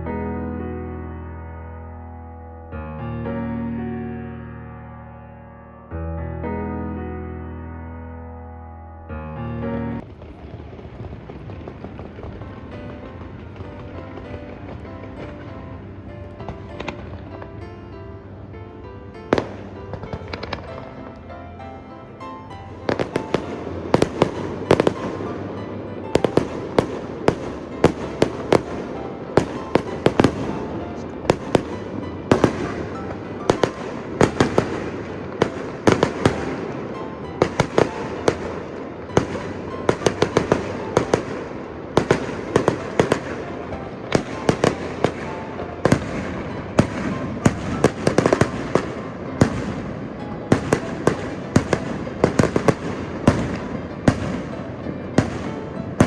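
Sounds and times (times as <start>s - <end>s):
fireworks bursting: 10.0s - 17.7s, 19.3s - 56.0s.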